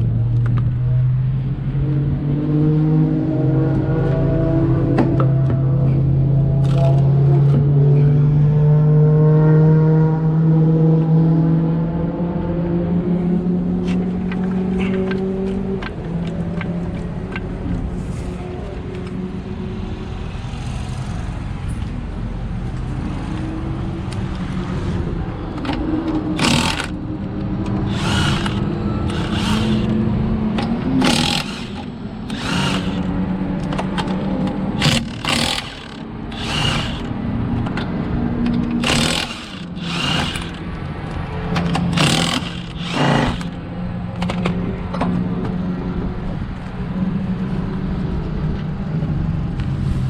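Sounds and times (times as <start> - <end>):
cars running drone: 0.0 - 50.0
impact wrench bursts: 26.4 - 27.1, 27.7 - 30.0, 31.0 - 33.2, 34.8 - 37.2, 38.8 - 40.7, 41.7 - 43.6.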